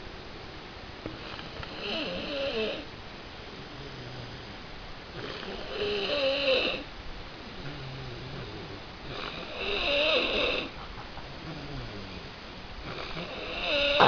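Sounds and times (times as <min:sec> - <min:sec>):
person snoring: 0:07.6 - 0:10.8, 0:12.9 - 0:14.0.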